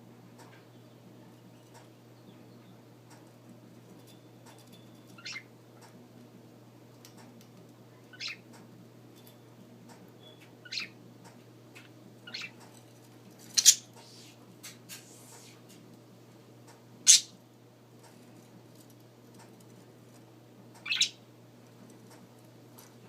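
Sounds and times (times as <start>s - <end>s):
low steady hum: 0.0s - 23.0s
budgerigar chirping: 5.2s - 5.5s, 8.1s - 8.4s, 10.6s - 11.0s, 12.3s - 12.6s, 13.6s - 13.8s, 17.1s - 17.4s, 20.8s - 21.2s.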